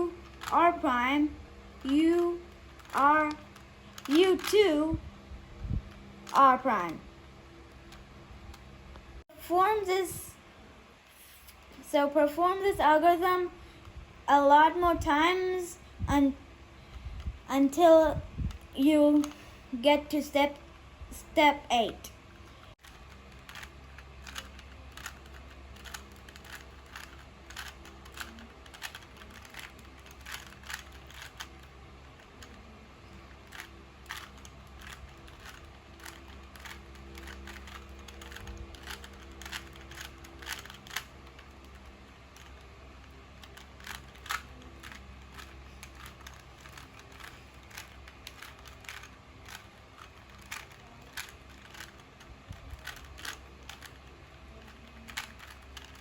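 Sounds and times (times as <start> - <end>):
low steady hum: 0.0 - 56.0
plastic puzzle cube clicking: 0.2 - 0.6, 2.6 - 4.6, 22.8 - 56.0.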